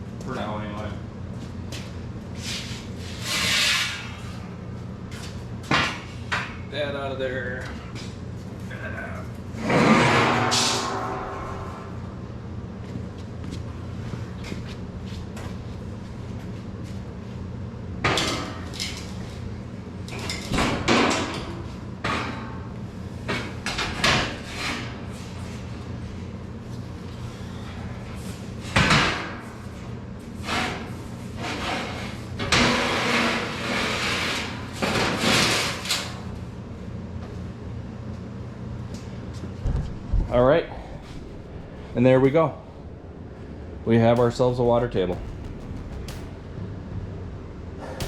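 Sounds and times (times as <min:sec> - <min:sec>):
steady low hum: 0:00.0 - 0:18.0, 0:38.4 - 0:48.0
metal knocks clanks and scrapes: 0:09.6 - 0:11.9.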